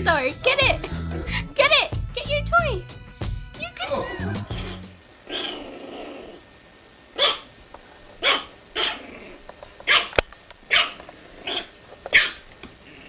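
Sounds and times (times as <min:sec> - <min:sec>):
dog barking: 0:07.2 - 0:07.5, 0:08.2 - 0:09.0, 0:09.9 - 0:12.4.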